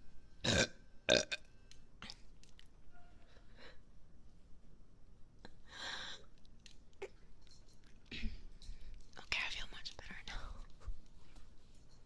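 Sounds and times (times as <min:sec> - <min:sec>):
woman burping: 0:00.4 - 0:01.4.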